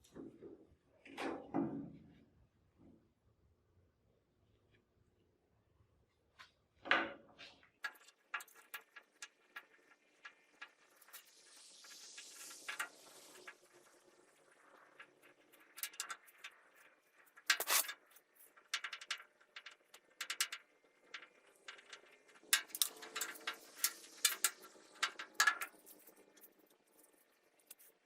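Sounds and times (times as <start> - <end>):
hand tools clicking on metal: 17.5 - 17.9.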